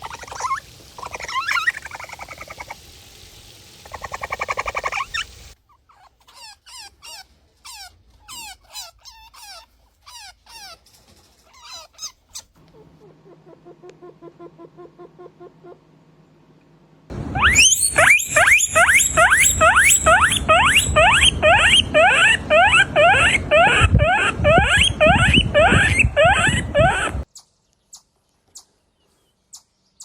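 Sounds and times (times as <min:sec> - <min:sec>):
rodent harsh squeaks and squeals: 0:04.2 - 0:12.5, 0:17.4 - 0:27.2
rodent pulsing buzzing call: 0:17.3 - 0:27.2
rodent short chirps: 0:17.4 - 0:27.2.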